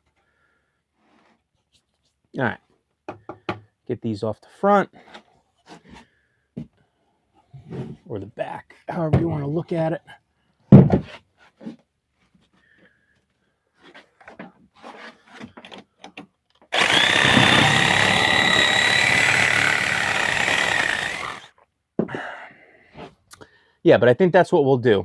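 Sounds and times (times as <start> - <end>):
reciprocating saw cutting wood: 16.7 - 21.5.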